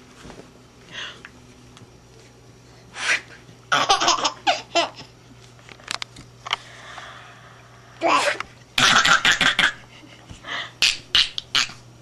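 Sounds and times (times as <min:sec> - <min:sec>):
baby laughing: 0:03.7 - 0:05.1.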